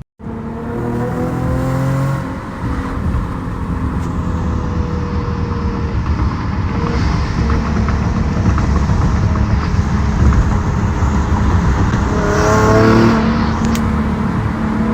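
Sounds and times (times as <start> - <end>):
car exhaust deep note: 0.2 - 14.9.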